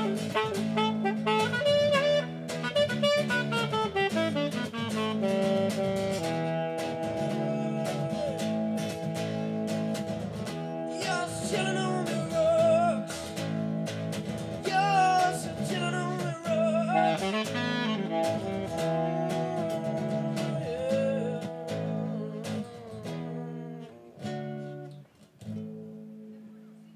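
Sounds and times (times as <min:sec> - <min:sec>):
acoustic guitar strumming chords: 0:00.0 - 0:25.0.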